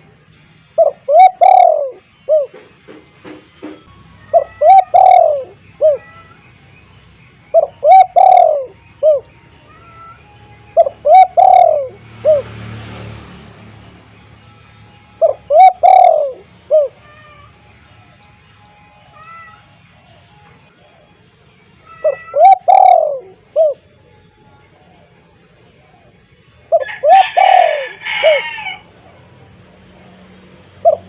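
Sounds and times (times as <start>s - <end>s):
dove cooing: 0.8s - 2.7s, 4.3s - 6.4s, 7.5s - 10.2s, 10.8s - 12.4s, 15.2s - 17.5s, 21.9s - 24.0s, 25.7s - 29.2s, 30.8s - 31.0s
small birds chirping: 3.8s - 12.7s, 14.4s - 27.0s.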